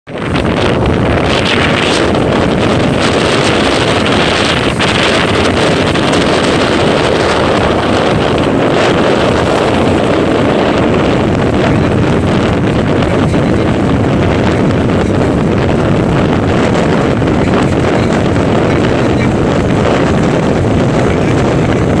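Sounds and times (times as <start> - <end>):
rush of ship at sea: 0.1 - 22.0
wind buffeting microphone: 0.1 - 22.0.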